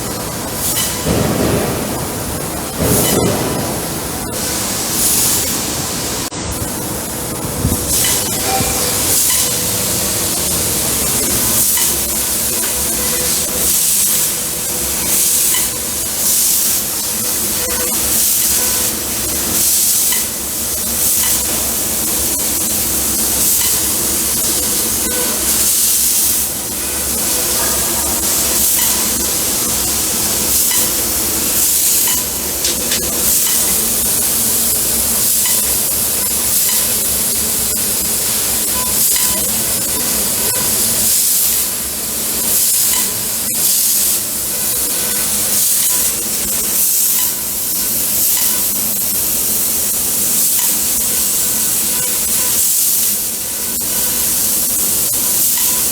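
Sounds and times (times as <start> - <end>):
machine hum: 0.0 - 42.6
laser cutter gas jet hissing: 0.0 - 55.9.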